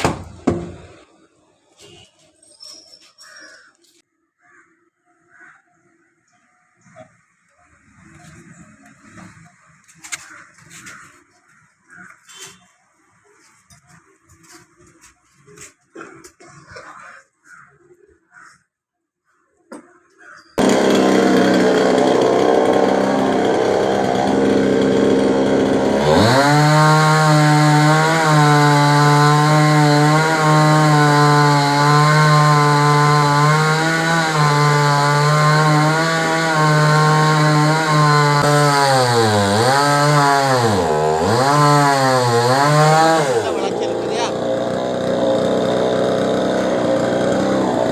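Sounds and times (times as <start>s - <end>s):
chainsaw engine revving: 20.6s - 47.9s.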